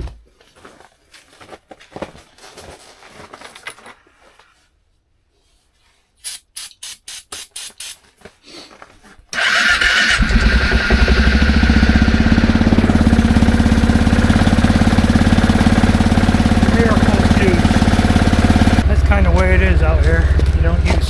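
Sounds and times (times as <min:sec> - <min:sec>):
atv engine cranking: 0:09.4 - 0:21.0
atv engine idling: 0:09.4 - 0:21.0.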